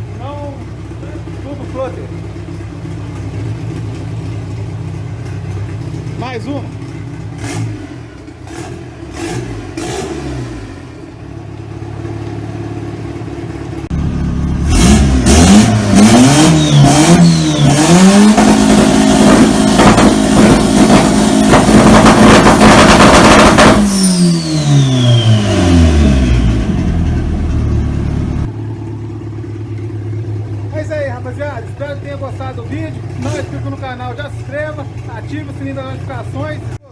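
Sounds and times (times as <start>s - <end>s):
exhaust popping and crackling: 0.0s - 14.1s, 14.7s - 36.9s
car engine revving: 0.0s - 36.9s
turbo whistle: 16.5s - 18.0s, 23.8s - 26.7s.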